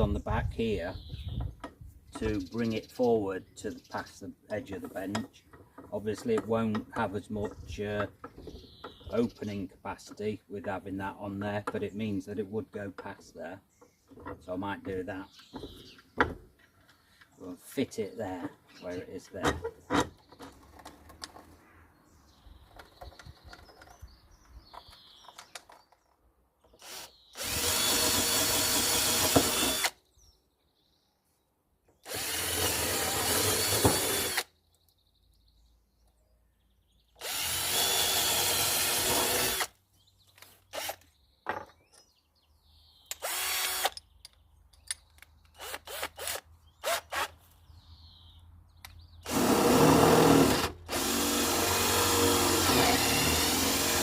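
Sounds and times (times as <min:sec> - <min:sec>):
handling clicks and knocks: 0:22.6 - 0:26.8
power drill drilling: 0:26.8 - 0:30.0, 0:32.1 - 0:34.5, 0:37.2 - 0:39.7, 0:40.7 - 0:41.0, 0:43.1 - 0:44.0, 0:45.6 - 0:47.3, 0:49.2 - 0:54.0.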